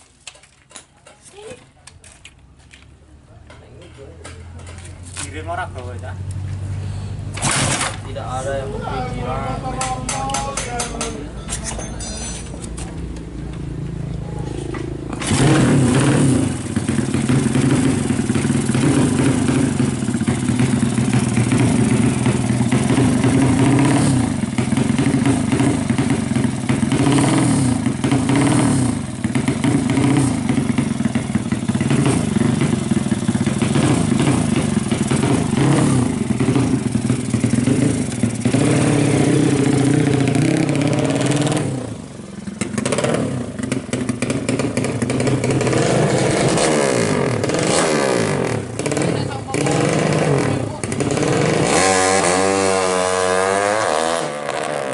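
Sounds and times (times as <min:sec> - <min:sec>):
racing motorcycle engine revving: 0:13.5 - 0:54.9.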